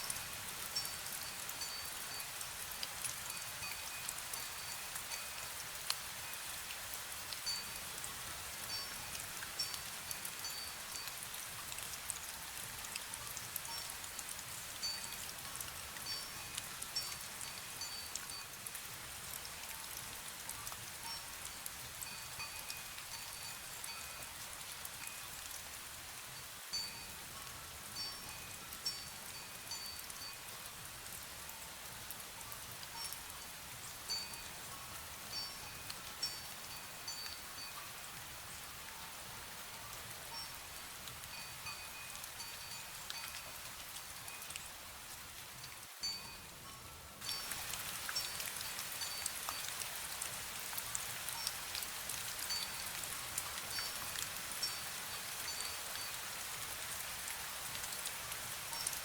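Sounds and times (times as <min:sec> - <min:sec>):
wind bell tinkling: 0:00.0 - 0:02.4, 0:07.4 - 0:07.8, 0:08.7 - 0:11.1, 0:14.8 - 0:15.2, 0:16.0 - 0:18.6, 0:22.0 - 0:24.3, 0:26.7 - 0:30.5, 0:34.1 - 0:38.0, 0:41.3 - 0:43.5, 0:46.0 - 0:49.8, 0:52.4 - 0:56.6
rain falling: 0:00.0 - 0:59.0.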